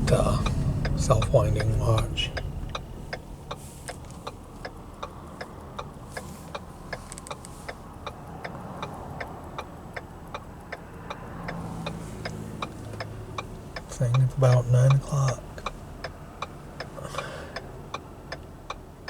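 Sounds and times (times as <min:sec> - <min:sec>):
steady low hum: 0:00.0 - 0:05.0
wristwatch ticking: 0:00.0 - 0:19.0.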